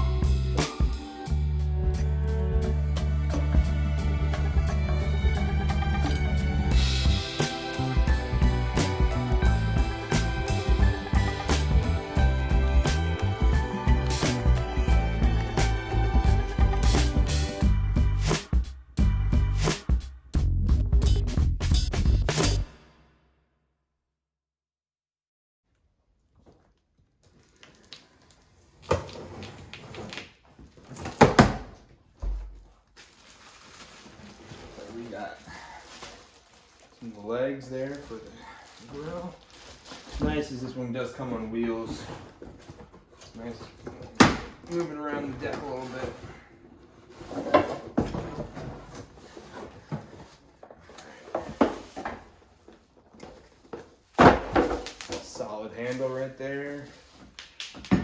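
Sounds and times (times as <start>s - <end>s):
packaging rustling: 32.8s - 40.2s.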